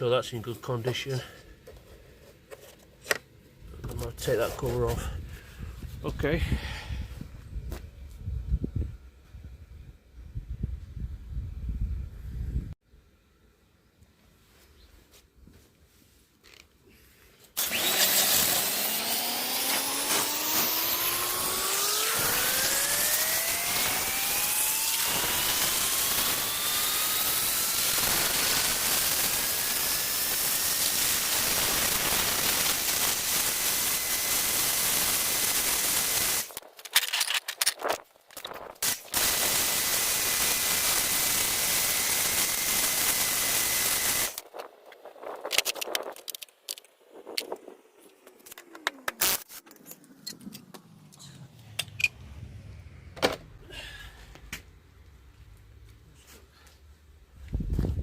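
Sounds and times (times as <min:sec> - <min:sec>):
grinder grinding metal blade: 0:17.6 - 0:36.6, 0:38.8 - 0:44.4.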